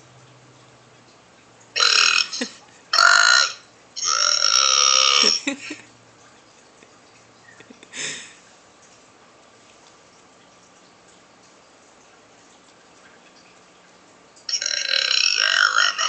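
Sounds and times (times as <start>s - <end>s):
person belching syllables: 1.8s - 5.6s, 14.5s - 16.0s.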